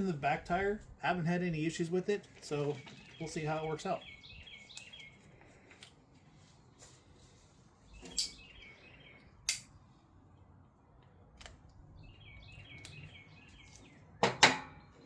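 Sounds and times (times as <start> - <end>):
bird chirping: 2.5 - 5.3, 7.8 - 9.4, 11.8 - 14.2.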